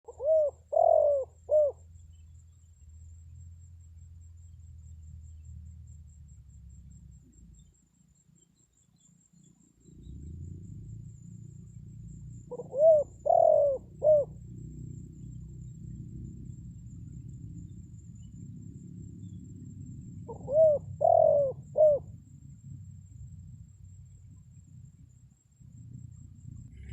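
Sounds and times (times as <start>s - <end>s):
dove cooing: 0.0s - 1.9s, 12.3s - 16.0s, 20.1s - 22.2s
low steady rumble: 0.1s - 26.9s.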